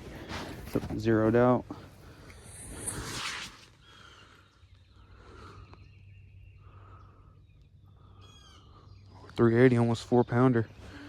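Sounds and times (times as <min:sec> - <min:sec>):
birds calling: 0:00.0 - 0:11.0
bird chirps: 0:03.7 - 0:11.0.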